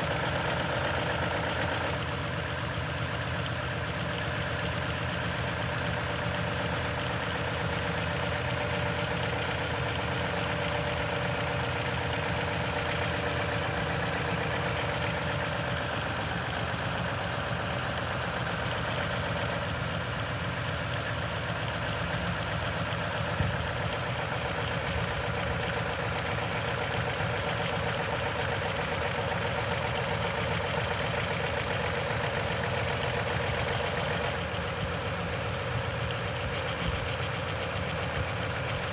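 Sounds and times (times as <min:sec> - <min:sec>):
truck engine idling: 0:00.0 - 0:38.9
fast rattling tick: 0:00.1 - 0:02.0, 0:23.3 - 0:38.9.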